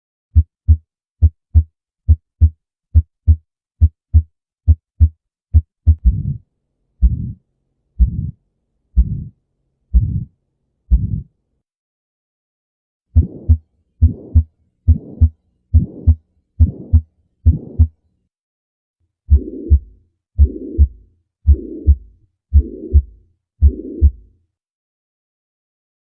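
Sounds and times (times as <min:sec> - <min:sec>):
heartbeat thumps: 0:00.4 - 0:06.4, 0:07.0 - 0:07.4, 0:08.0 - 0:08.4, 0:09.0 - 0:09.4, 0:10.0 - 0:10.3, 0:10.9 - 0:11.3, 0:13.2 - 0:17.9, 0:19.3 - 0:24.3
heart murmur whooshing: 0:01.6 - 0:06.4, 0:07.0 - 0:07.4, 0:08.0 - 0:08.4, 0:09.0 - 0:09.3, 0:10.0 - 0:10.3, 0:10.9 - 0:11.3, 0:13.2 - 0:17.9, 0:19.3 - 0:24.2.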